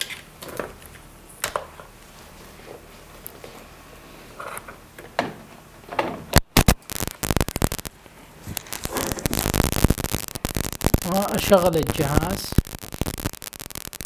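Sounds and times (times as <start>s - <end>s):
loud speaker pops: 6.3s - 6.8s
rapid crackling static: 6.4s - 14.0s.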